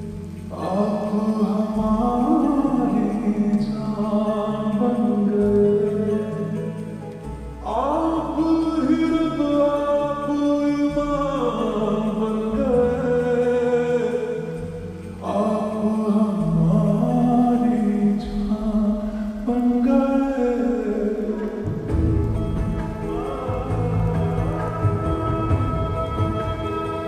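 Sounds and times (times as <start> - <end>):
love song with sung vocal melody: 0.0 - 27.0.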